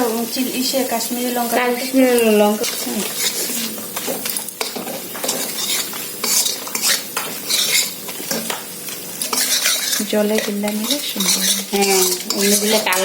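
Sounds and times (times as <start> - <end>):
spices sizzling in oil: 0.0 - 13.0
utensil stirring and scraping pan: 0.0 - 13.0.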